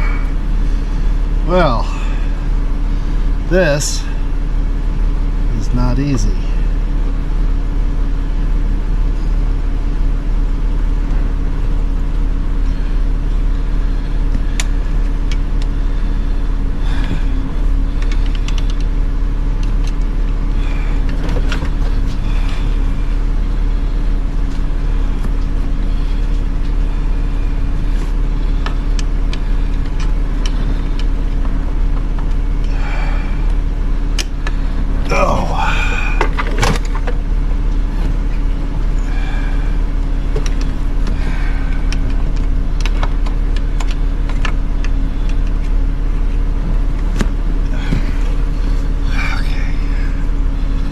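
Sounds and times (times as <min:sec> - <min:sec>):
steady low hum: 0:00.0 - 0:50.9.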